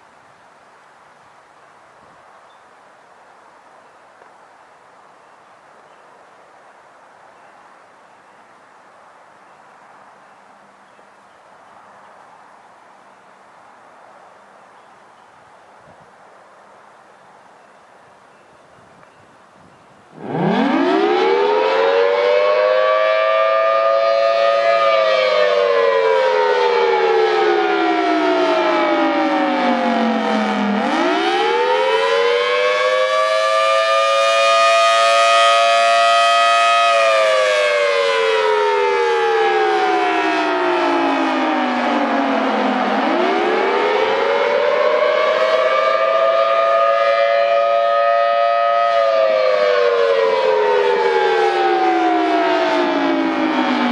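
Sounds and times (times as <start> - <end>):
tornado siren wailing: 20.1 - 53.9.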